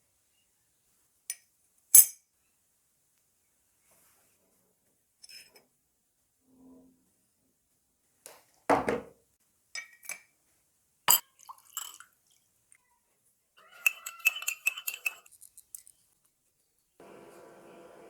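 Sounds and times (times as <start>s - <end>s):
small metal parts clinking: 13.8s - 16.1s.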